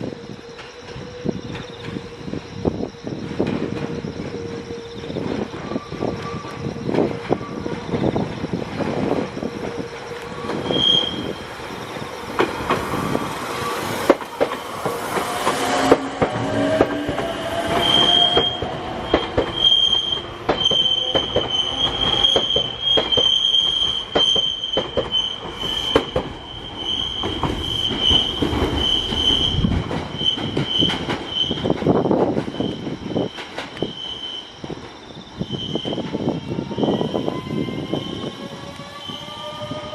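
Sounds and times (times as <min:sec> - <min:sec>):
high wavering wheel squeal: 0:00.0 - 0:39.9
train wheels clicking over rail joints: 0:06.5 - 0:36.2.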